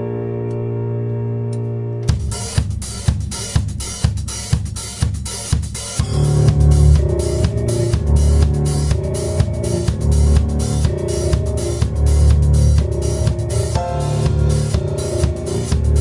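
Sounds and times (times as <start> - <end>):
heavy sustained low notes: 0.0 - 2.3, 6.0 - 16.0
drum kit with cymbals: 2.1 - 16.0
keyboard chord: 13.7 - 16.0.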